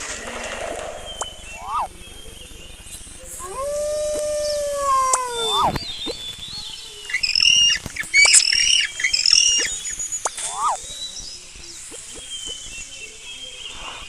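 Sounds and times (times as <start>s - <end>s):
bird-like squawking calls: 0.8s - 6.4s, 7.0s - 10.8s.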